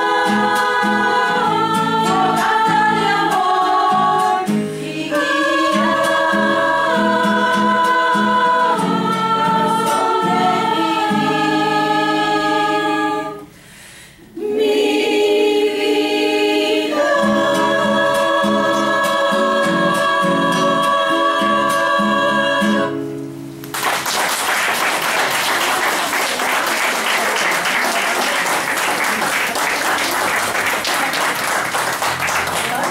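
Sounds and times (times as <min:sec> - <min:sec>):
guitar: 0:00.0 - 0:13.7, 0:16.9 - 0:24.1
choir singing held chords: 0:00.0 - 0:23.2
audience applause: 0:23.7 - 0:32.9.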